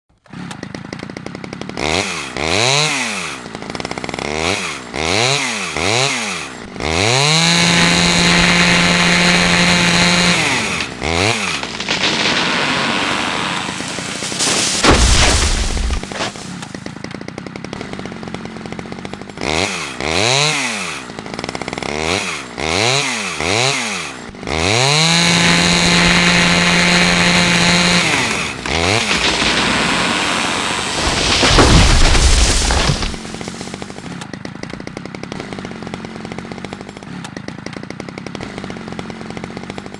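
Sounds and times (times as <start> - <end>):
chainsaw revving: 0.2 - 39.9
loud crash: 11.7 - 16.6, 28.3 - 33.8.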